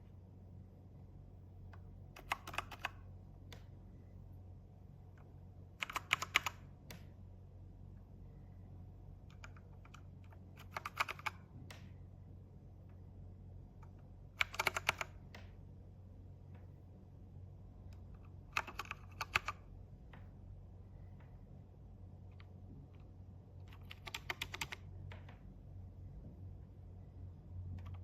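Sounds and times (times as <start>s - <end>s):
low steady hum: 0.0s - 28.0s
clicky mechanical keyboard typing: 1.8s - 3.7s, 5.1s - 7.1s, 9.2s - 11.9s, 13.8s - 15.5s, 17.9s - 20.2s, 22.3s - 25.4s, 27.8s - 28.0s.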